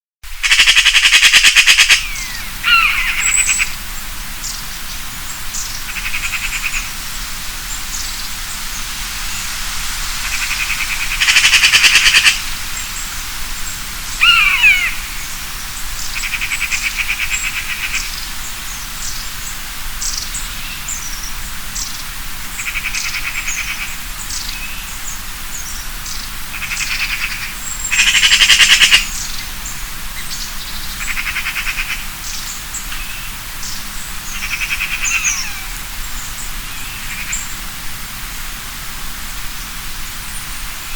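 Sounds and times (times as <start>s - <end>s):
falling whistled bird calls: 1.3s - 3.8s, 7.7s - 15.3s.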